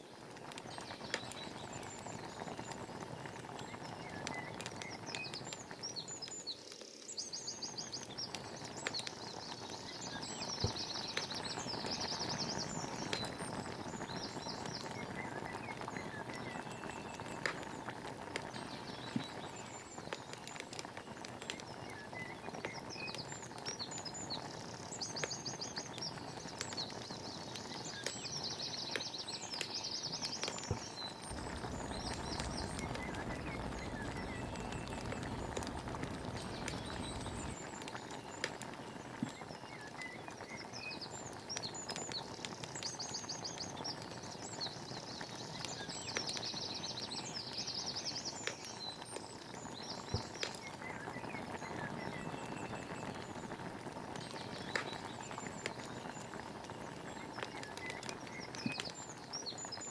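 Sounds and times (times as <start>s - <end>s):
songbirds trilling: 30.7s - 37.6s
steady outdoor hiss: 31.2s - 37.8s.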